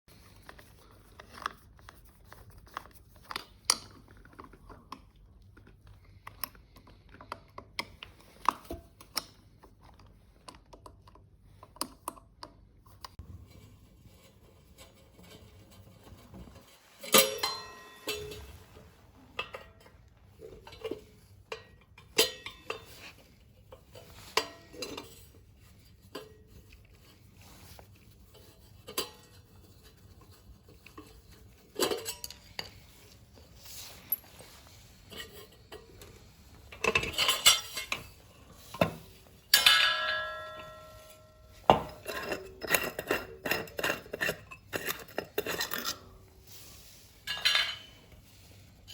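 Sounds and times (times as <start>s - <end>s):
metal clinks and knocks: 15.4s - 18.8s, 19.4s - 25.3s, 35.1s - 46.1s.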